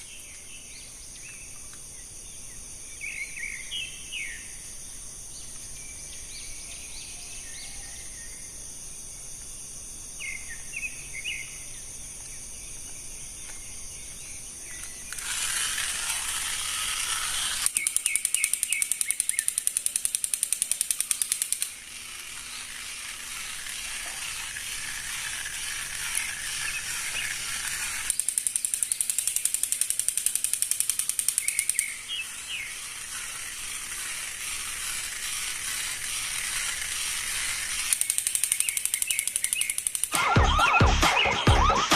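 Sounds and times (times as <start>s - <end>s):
steady high hum: 8.7s - 41.9s
rapid mechanical clicking: 15.1s - 40.4s.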